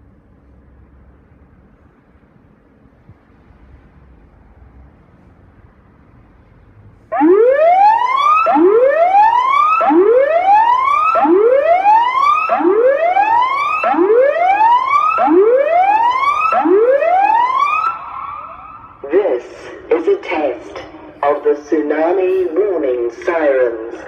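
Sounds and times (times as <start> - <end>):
warning siren rising whoop: 7.1 - 19.2.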